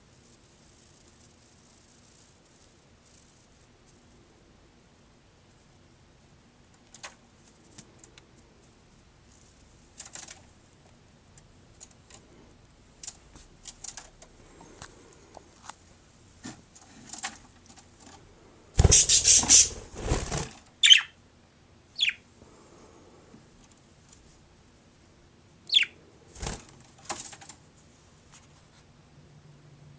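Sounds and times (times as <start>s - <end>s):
wings flapping in water: 18.8s - 20.6s
bird chirps: 20.8s - 21.2s, 22.0s - 22.2s, 25.7s - 26.0s.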